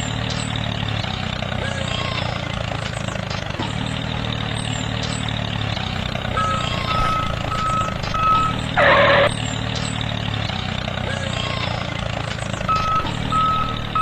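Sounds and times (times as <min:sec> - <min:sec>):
vehicle engine running: 0:00.0 - 0:14.0
truck reversing alarm beeping: 0:03.7 - 0:11.6, 0:12.5 - 0:14.0.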